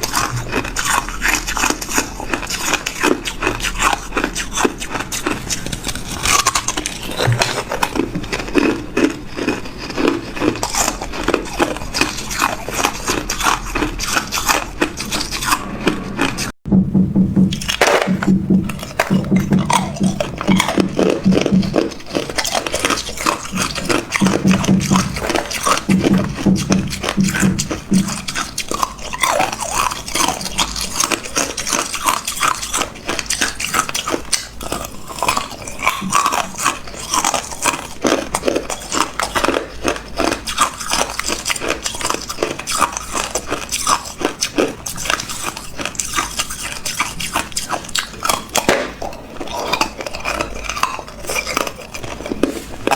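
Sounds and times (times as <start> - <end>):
ice crunching being chewed: 0.0 - 16.6, 17.6 - 52.9.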